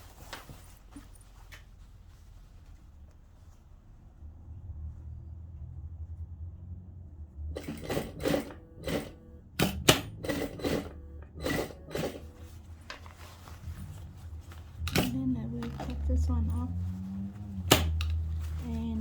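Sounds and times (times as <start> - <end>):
short rustling strokes: 0.0 - 6.2, 11.9 - 19.0.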